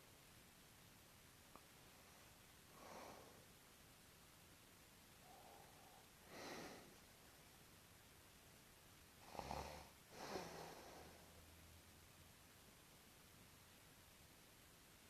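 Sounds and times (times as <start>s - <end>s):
breathy exhale: 5.3s - 7.0s
person snoring: 9.2s - 11.3s.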